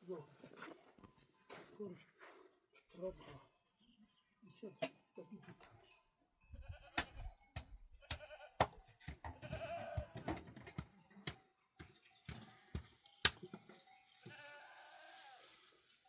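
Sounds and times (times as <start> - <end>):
livestock bleating: 6.6 - 7.2, 8.0 - 10.2, 14.2 - 15.5
sharp clicks and knocks: 7.0 - 12.5.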